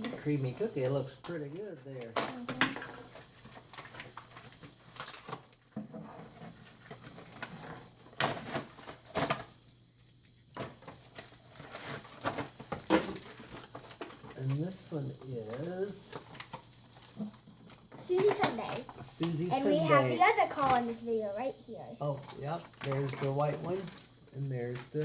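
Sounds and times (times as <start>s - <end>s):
plastic packaging crinkling and tearing: 3.0s - 5.6s, 10.6s - 14.2s, 15.5s - 17.3s.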